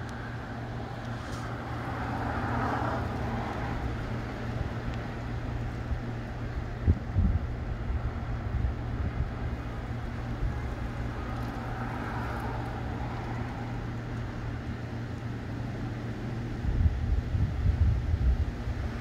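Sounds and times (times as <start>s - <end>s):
gusty wind buffeting microphone: 2.6s - 14.1s, 16.4s - 19.0s.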